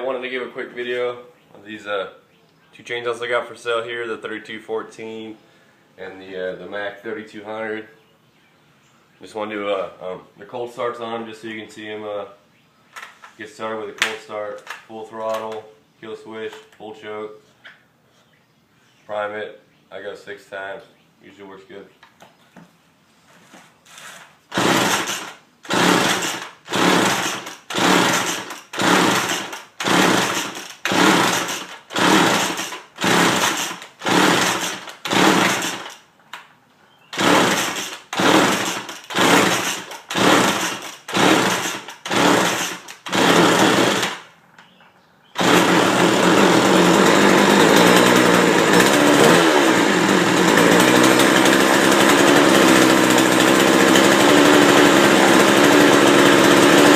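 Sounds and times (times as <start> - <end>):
recoil starter pulls: 24.0 - 36.1, 37.1 - 44.3, 45.4 - 56.9
chainsaw engine running: 24.5 - 36.0, 37.2 - 44.2, 45.4 - 56.9.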